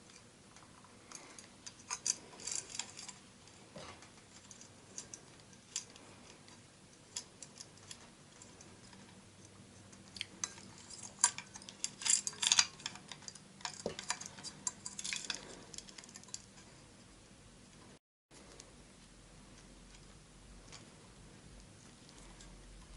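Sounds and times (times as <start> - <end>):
small parts clicking and rattling: 0.0 - 16.8.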